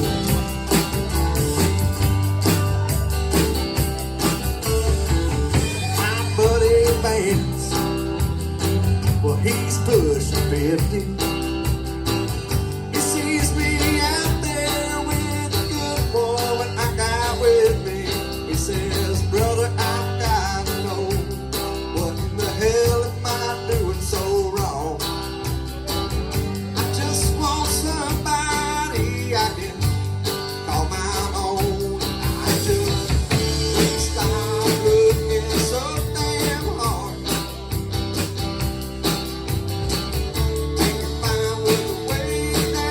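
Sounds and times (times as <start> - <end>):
country-rock band playing live: 0.0 - 42.9
lead vocal singing: 5.5 - 8.3, 12.9 - 25.0, 26.8 - 37.5, 40.8 - 42.9.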